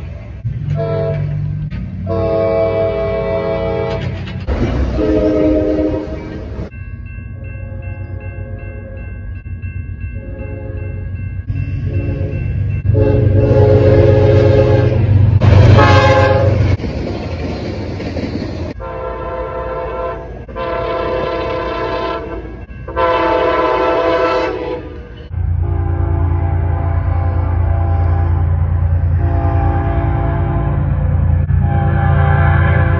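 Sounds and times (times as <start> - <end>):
low rumble of train: 0.0 - 32.9
train horn blasts: 0.5 - 6.7, 11.8 - 16.8, 18.8 - 32.9.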